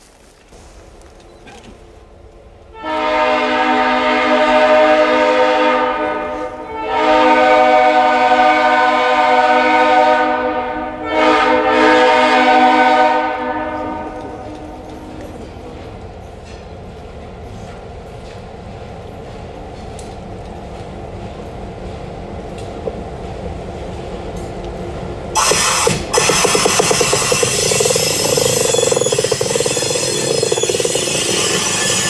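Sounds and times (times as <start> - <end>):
steam locomotive whistle: 2.7 - 15.1, 25.4 - 32.0.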